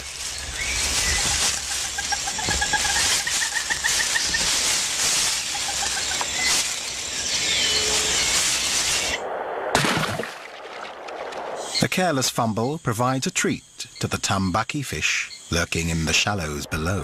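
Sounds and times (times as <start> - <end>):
insects hissing: 0.0 - 9.2, 11.6 - 17.0
rustling foliage: 0.0 - 9.2
bird pipping: 0.4 - 9.2.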